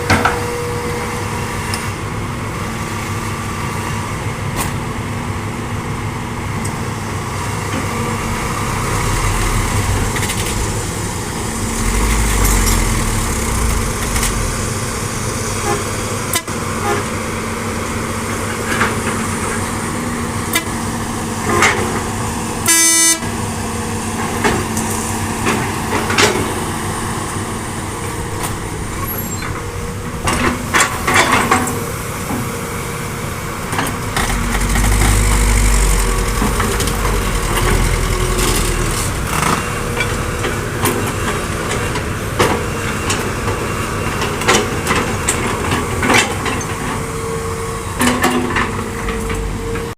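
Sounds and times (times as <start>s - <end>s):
excavator diesel engine rumbling: 0.0s - 49.9s
short horn toot: 22.6s - 23.3s.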